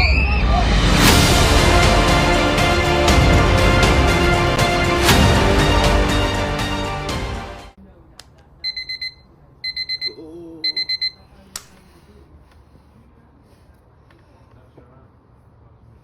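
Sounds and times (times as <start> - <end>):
music: 0.0 - 7.8
alarm clock beeping: 8.6 - 11.2.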